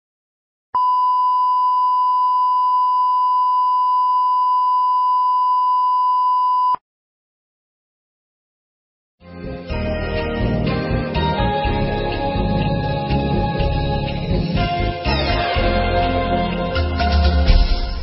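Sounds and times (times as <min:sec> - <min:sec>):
steady electronic beep tone: 0:00.8 - 0:06.8.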